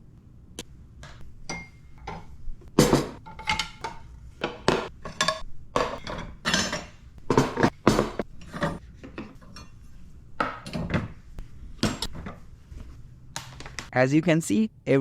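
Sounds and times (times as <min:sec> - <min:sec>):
dishes and cutlery clinking: 0:01.1 - 0:11.2.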